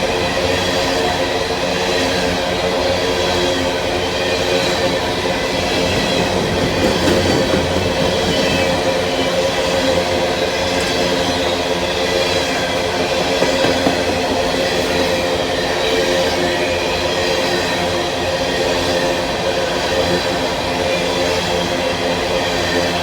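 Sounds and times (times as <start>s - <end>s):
train wheels rumbling on rail: 0.0s - 23.0s
empty freight cars clattering: 4.4s - 16.0s.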